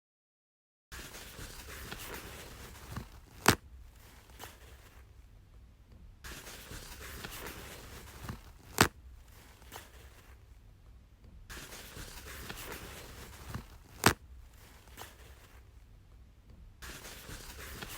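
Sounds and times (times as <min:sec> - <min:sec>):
toilet paper ripping: 0:00.9 - 0:05.1, 0:06.3 - 0:10.4, 0:11.5 - 0:15.6, 0:16.8 - 0:17.9
toilet paper rustling off roll: 0:00.9 - 0:05.1, 0:06.3 - 0:10.4, 0:11.5 - 0:15.7, 0:16.8 - 0:17.9.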